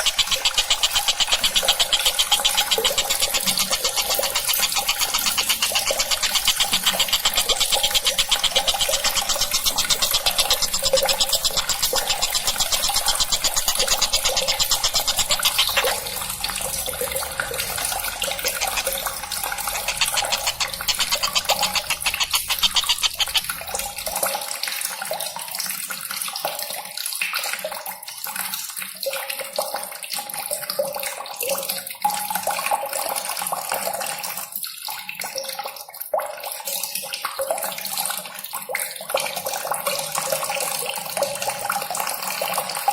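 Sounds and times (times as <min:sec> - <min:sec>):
fast rattle of ticks: 0:00.0 - 0:24.2
running water rushing: 0:00.0 - 0:24.3.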